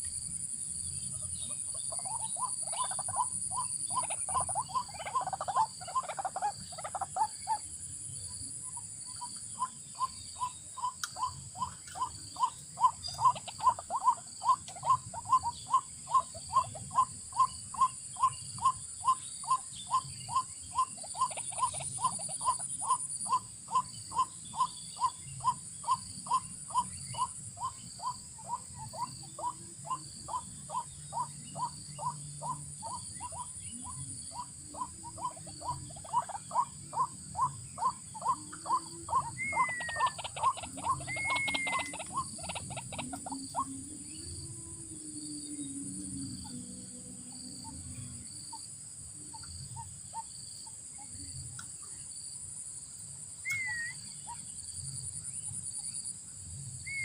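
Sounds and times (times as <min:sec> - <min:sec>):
bird call lure note: 0:53.4 - 0:53.9
brief whistles: 0:53.5 - 0:54.0.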